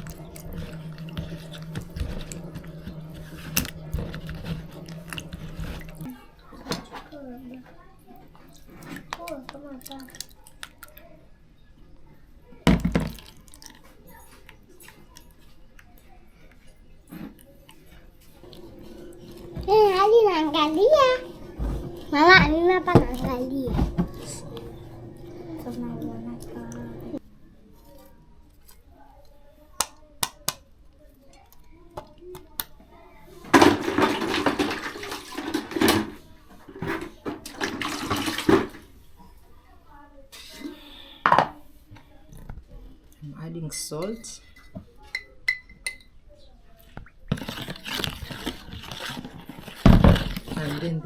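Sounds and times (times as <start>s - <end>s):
water splashing and pouring: 0.0s - 6.2s, 33.5s - 36.1s, 37.4s - 38.9s.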